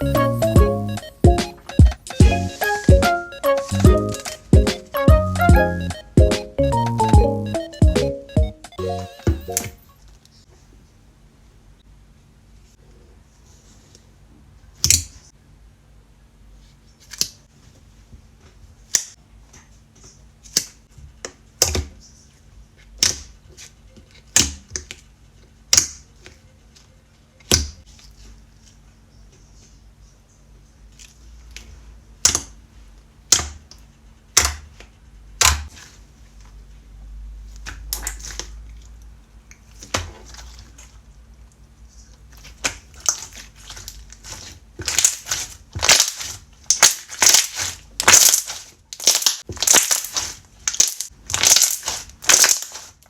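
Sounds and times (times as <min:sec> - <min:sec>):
slime popping: 0:42.5 - 0:52.9.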